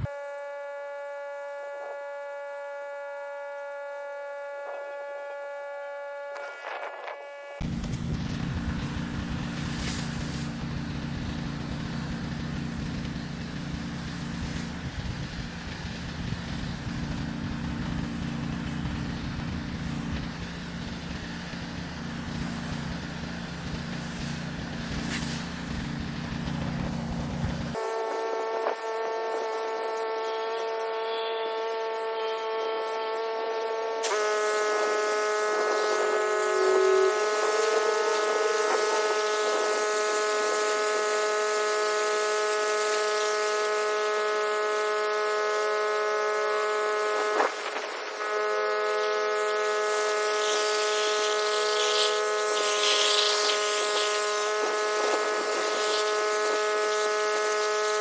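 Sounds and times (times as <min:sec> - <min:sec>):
pressure washer engine and pump: 0:00.0 - 0:58.0
whining hum: 0:00.0 - 0:58.0
water spray hiss: 0:07.7 - 0:27.8, 0:34.0 - 0:58.0.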